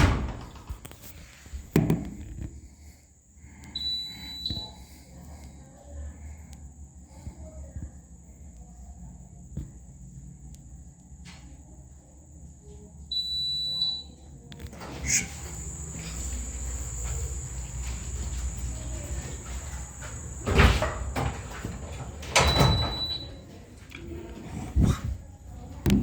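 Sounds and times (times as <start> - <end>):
smoke alarm beep: 3.8 - 4.8, 13.1 - 14.2, 22.3 - 23.4
steady high whine: 15.0 - 22.5.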